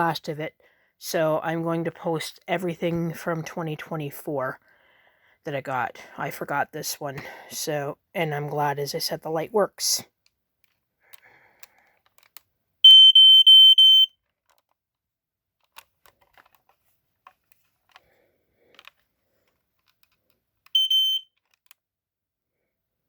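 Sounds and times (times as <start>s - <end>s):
faint handling clicks: 10.2s - 12.5s, 15.6s - 20.8s
smoke detector alarm: 12.8s - 14.2s, 20.8s - 21.4s.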